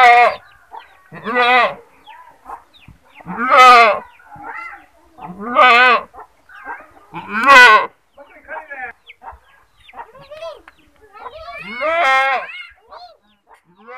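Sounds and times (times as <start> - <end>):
goat bleating: 0.0 - 0.4, 1.1 - 1.8, 3.2 - 6.2, 7.1 - 7.9, 11.5 - 12.7.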